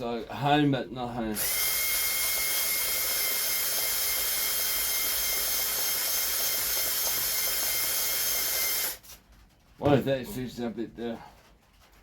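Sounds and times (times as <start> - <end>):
rotary tool whining: 1.3 - 9.1.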